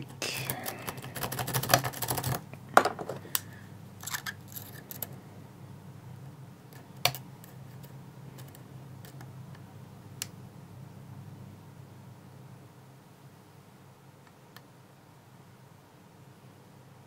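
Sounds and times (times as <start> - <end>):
lock pick raking pins: 4.0 - 5.1.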